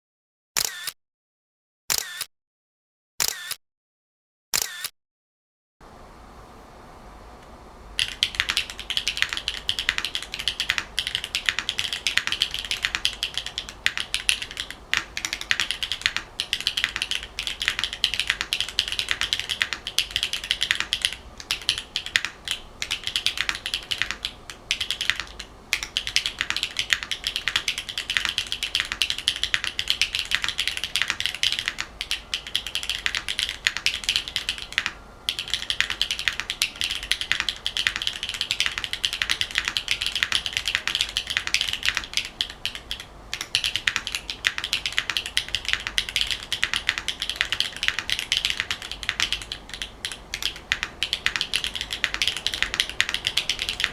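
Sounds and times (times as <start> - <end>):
mechanical keyboard typing: 8.0 - 53.9.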